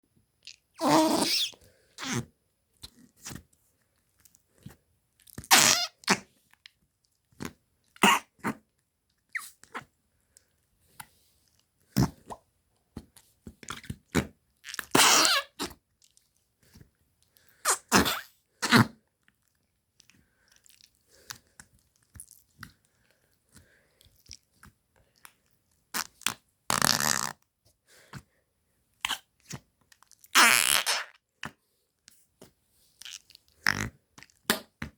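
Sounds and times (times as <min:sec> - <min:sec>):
farts: 0:00.8 - 0:02.2, 0:05.5 - 0:06.2, 0:14.9 - 0:15.6, 0:17.7 - 0:18.9, 0:26.7 - 0:27.4, 0:30.3 - 0:31.1, 0:33.0 - 0:34.6.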